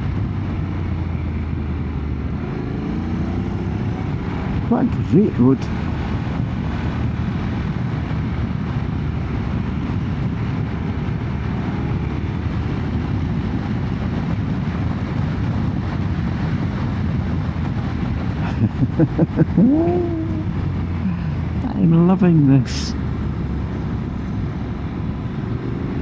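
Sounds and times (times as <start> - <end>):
wind rush on microphone: 0.0 - 26.0.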